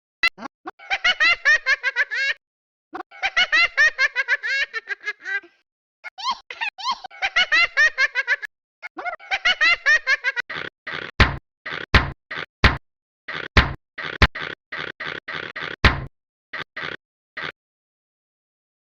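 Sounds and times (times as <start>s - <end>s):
high-pitched laughter: 0.2s - 2.4s, 3.0s - 10.7s.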